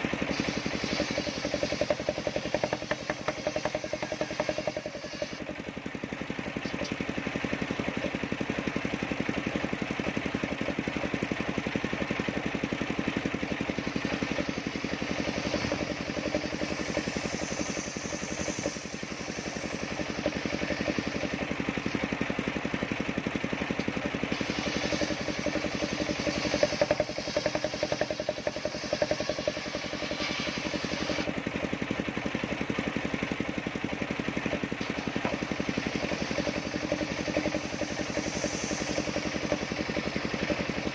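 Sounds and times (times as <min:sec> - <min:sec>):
sawmill engine throbbing: 0:00.0 - 0:40.9.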